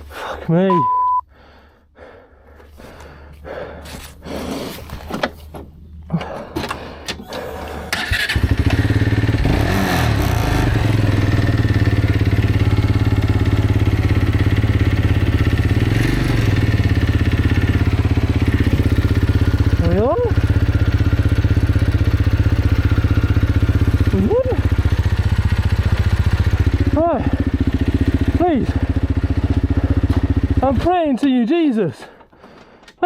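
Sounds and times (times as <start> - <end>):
motorcycle being handled: 3.9 - 7.5
motorcycle engine idling: 6.9 - 31.4.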